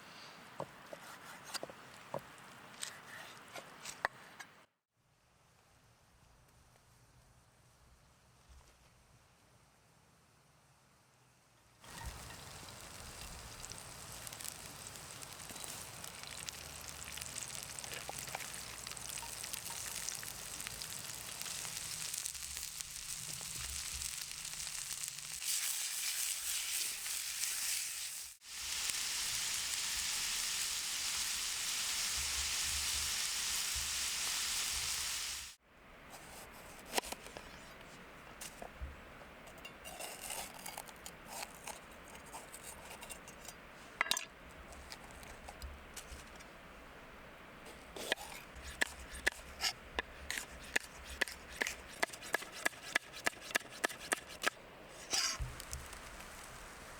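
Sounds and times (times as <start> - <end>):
food sizzling: 11.8 - 35.6, 48.0 - 56.9.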